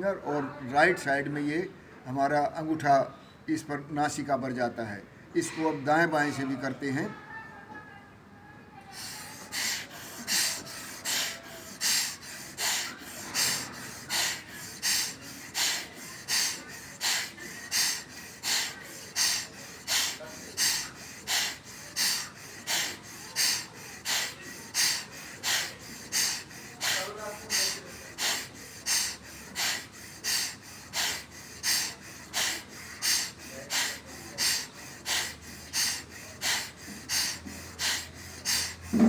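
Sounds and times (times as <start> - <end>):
sharp nasal breaths: 8.8 - 39.0.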